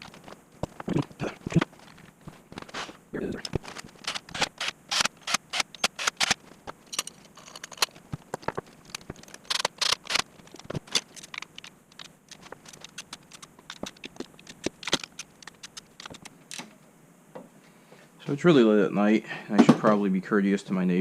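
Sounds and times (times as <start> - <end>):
metal tools clicking and scraping: 3.4 - 16.7.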